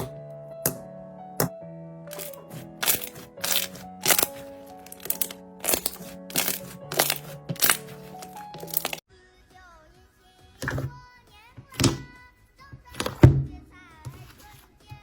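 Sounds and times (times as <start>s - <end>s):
background music with held notes: 0.0s - 15.0s
slime squeezed popping: 2.1s - 9.0s.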